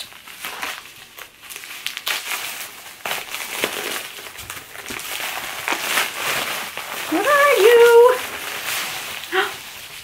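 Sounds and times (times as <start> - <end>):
paper wrapping crinkling: 0.0 - 10.0.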